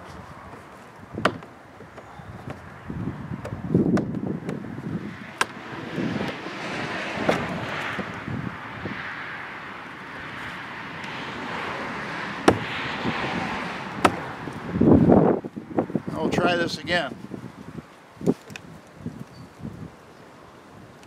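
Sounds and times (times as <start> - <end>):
outdoor rushing noise: 2.4 - 17.4.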